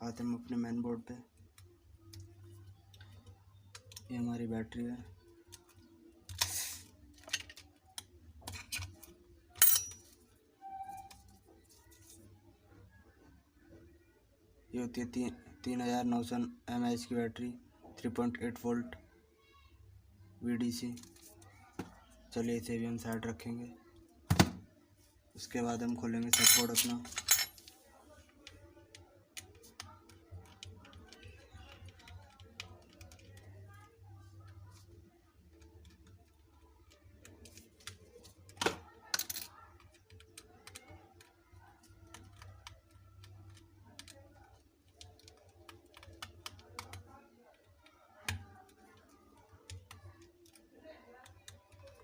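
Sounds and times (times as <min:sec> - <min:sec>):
phone parts and tools clicking: 0:06.3 - 0:10.2.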